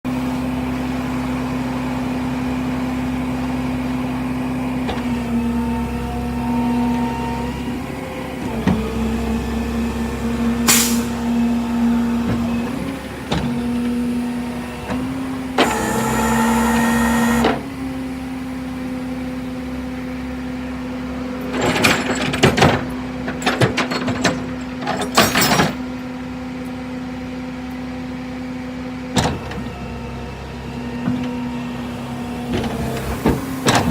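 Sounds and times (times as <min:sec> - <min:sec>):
sharp metallic clanks and knocks: 0:21.5 - 0:25.8
vehicle humming: 0:29.2 - 0:33.9.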